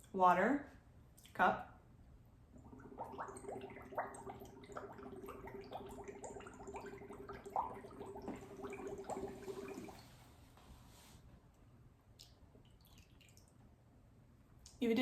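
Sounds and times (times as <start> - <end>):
water bubbling in a cup: 2.5 - 10.1.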